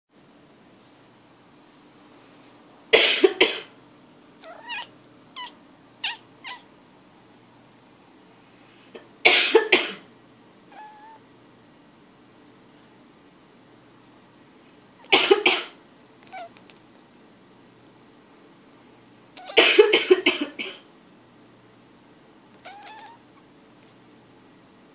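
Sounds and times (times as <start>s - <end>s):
woman coughing: 3.0s - 3.7s, 9.3s - 10.0s, 15.1s - 15.8s, 19.5s - 20.8s
cat meowing: 4.4s - 6.7s, 10.7s - 11.2s, 16.2s - 16.6s, 19.4s - 19.6s, 22.6s - 23.3s.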